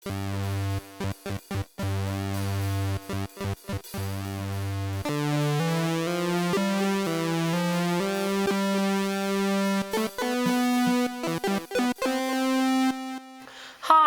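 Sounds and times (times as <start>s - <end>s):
synth chords with stutter cuts: 0.1s - 13.5s
short stepping synth notes: 5.0s - 13.5s.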